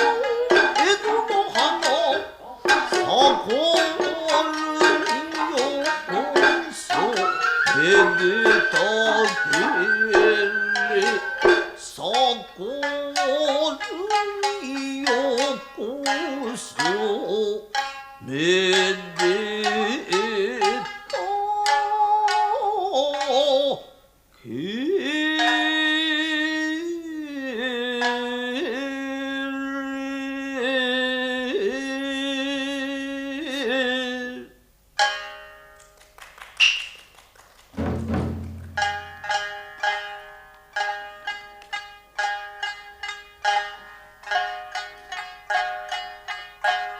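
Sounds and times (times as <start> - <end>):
shamisen plucking: 0.0 - 23.9, 24.9 - 36.0, 37.8 - 46.9
person singing gliding vocal line: 0.0 - 34.6.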